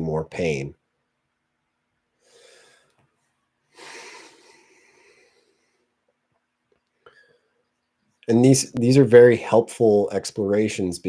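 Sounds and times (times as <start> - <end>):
person breathing close: 2.2 - 3.0, 3.7 - 6.0.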